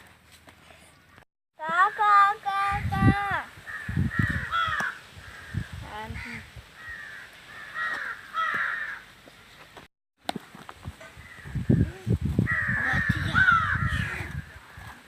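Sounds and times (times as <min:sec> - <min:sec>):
crows cawing: 0:03.7 - 0:09.1, 0:11.2 - 0:11.8, 0:12.5 - 0:15.0.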